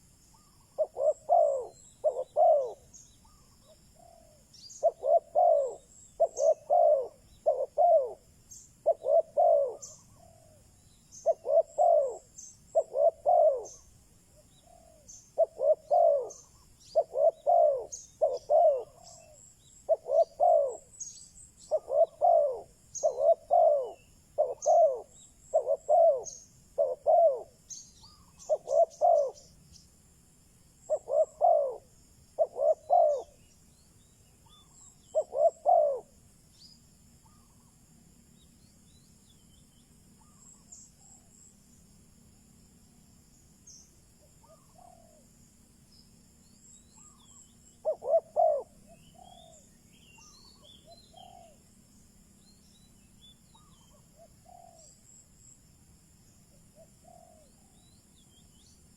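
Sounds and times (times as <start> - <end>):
dove cooing: 0.0 - 29.5, 30.8 - 33.5, 34.4 - 36.2, 44.3 - 45.2, 46.6 - 51.6, 53.5 - 55.2, 56.8 - 57.8
faint small bird chirps: 0.0 - 30.0, 30.8 - 58.9.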